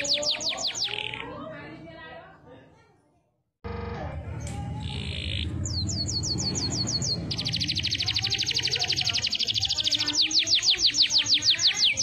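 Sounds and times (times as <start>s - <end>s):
canary singing: 0.0s - 1.5s, 4.4s - 12.0s.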